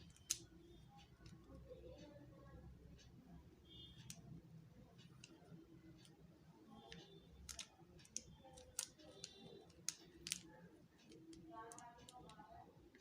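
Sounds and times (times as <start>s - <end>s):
puzzle cube pieces clicking: 0.0s - 0.5s, 6.9s - 12.4s.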